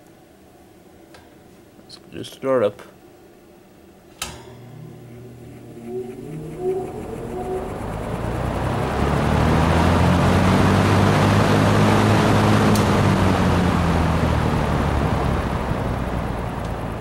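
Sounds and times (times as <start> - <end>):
box fan running: 3.9 - 17.0.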